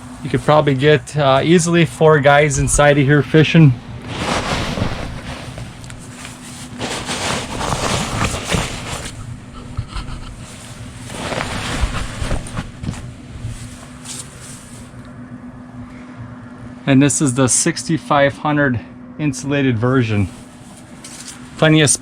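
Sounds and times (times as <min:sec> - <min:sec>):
faint low hum: 0:00.0 - 0:22.0
wind gusting over microphone: 0:03.7 - 0:06.2.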